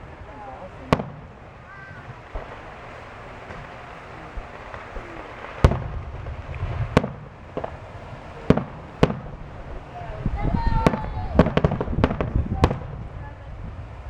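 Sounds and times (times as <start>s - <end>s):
fireworks bangs: 0.0s - 14.0s
low rumbling echo: 0.0s - 14.0s
soft fireworks pops: 0.0s - 14.0s.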